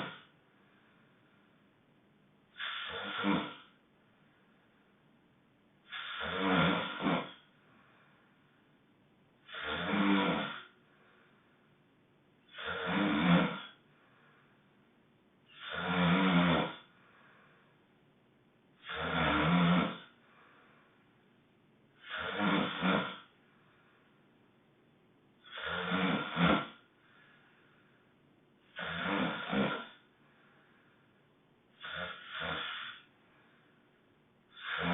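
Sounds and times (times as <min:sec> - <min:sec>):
loud honking snores: 0:00.0 - 0:00.3, 0:02.6 - 0:03.8, 0:05.9 - 0:07.5, 0:09.4 - 0:10.8, 0:12.5 - 0:13.8, 0:15.5 - 0:17.0, 0:18.8 - 0:20.2, 0:22.0 - 0:23.3, 0:25.4 - 0:27.3, 0:28.7 - 0:30.1, 0:31.8 - 0:33.1, 0:34.5 - 0:34.9
faint breath out: 0:16.9 - 0:17.8, 0:27.0 - 0:28.1.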